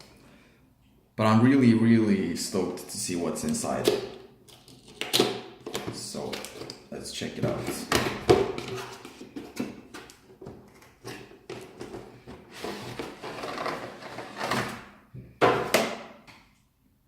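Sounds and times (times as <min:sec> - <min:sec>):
cardboard box scraping: 0:12.4 - 0:14.8.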